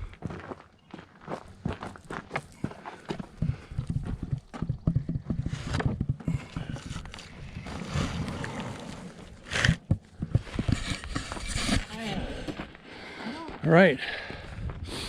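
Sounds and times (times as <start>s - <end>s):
footsteps: 0.0s - 12.9s
heavy wooden slabs knocking: 3.4s - 7.5s.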